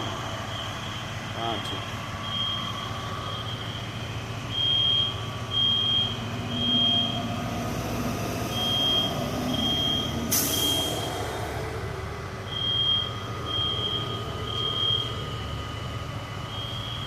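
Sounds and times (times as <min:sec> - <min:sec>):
fire truck engine running: 0:00.0 - 0:17.0
smoke alarm beeps: 0:02.2 - 0:03.8, 0:04.5 - 0:07.1, 0:08.6 - 0:10.8, 0:12.5 - 0:15.1, 0:16.5 - 0:17.0.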